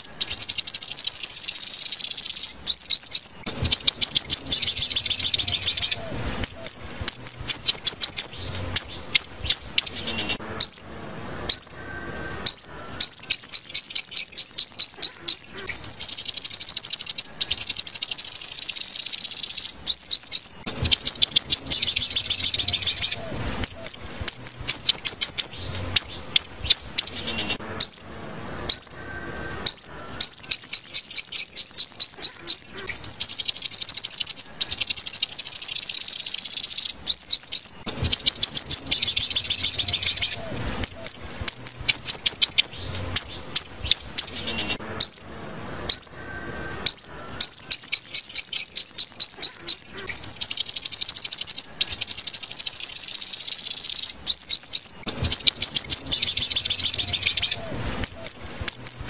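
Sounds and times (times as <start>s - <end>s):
bird chittering trills: 0.0s - 59.0s
sweeping bird call notes: 0.0s - 59.0s.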